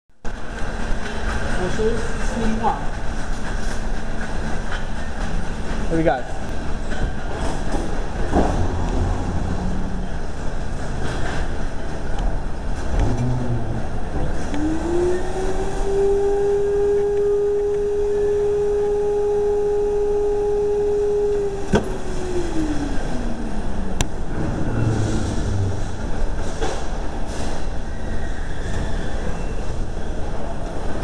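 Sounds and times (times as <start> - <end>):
background rumble: 7.3 - 14.6
vacuum motor whining: 14.5 - 24.0.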